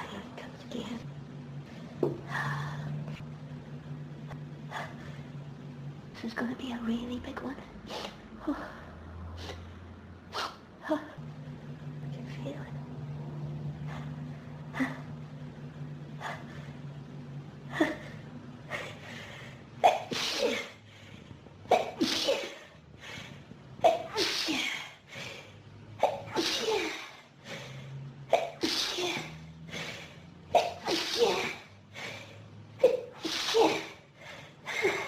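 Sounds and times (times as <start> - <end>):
person breathing: 17.8 - 19.7, 27.4 - 28.1, 29.6 - 30.3, 31.9 - 32.6
person sneezing: 19.8 - 20.8, 21.7 - 22.6, 26.0 - 27.1, 30.6 - 31.6, 32.8 - 34.0.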